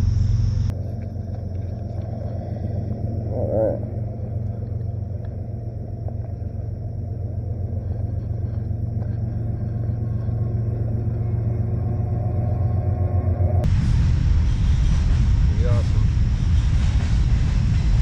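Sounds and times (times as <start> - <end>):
steady low rumble: 0.0 - 18.0.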